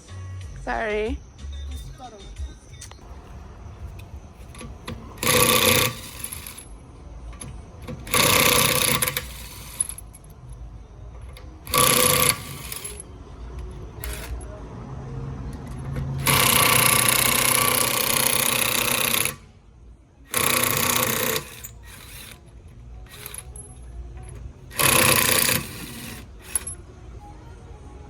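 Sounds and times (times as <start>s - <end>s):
impact wrench hammering: 3.9s - 6.7s, 7.4s - 10.1s, 11.7s - 13.0s, 13.7s - 14.4s, 15.8s - 19.5s, 20.3s - 22.5s, 23.1s - 23.8s, 24.7s - 26.8s.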